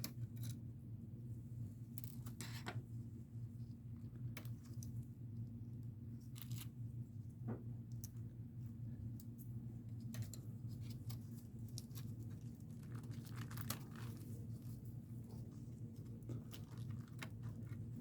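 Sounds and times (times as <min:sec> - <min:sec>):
steady low hum: 0:00.0 - 0:18.0
clicks and crinkles of handled parts: 0:06.3 - 0:06.8, 0:09.2 - 0:17.9.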